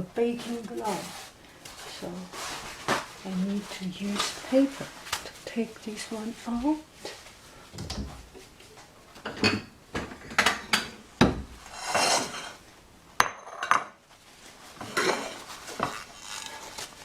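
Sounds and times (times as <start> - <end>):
pan scraping: 11.6 - 12.6, 14.8 - 17.0.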